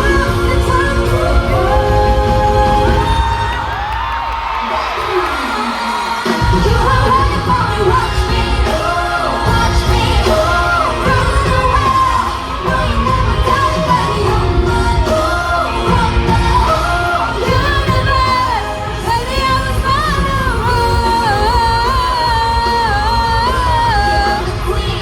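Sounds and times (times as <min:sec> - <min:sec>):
person singing: 0:00.0 - 0:03.9, 0:04.6 - 0:25.0
bass-heavy backing track: 0:06.4 - 0:25.0.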